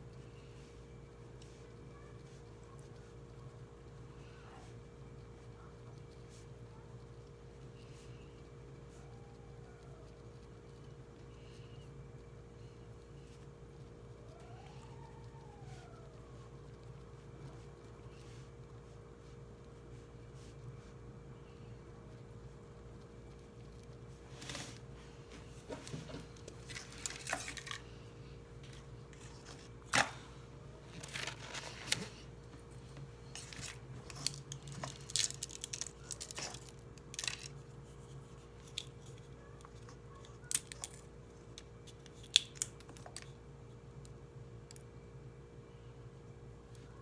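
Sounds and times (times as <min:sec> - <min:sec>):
steady low hum: 0:00.0 - 0:47.0
paper rustling: 0:24.3 - 0:28.0, 0:28.6 - 0:38.8.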